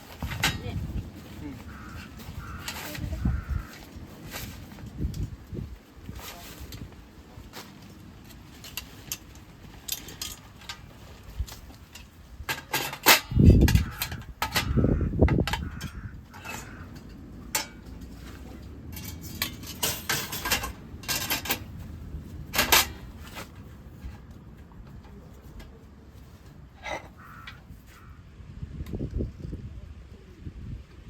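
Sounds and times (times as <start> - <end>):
metal cookware clinking: 11.9 - 14.8, 15.5 - 21.7.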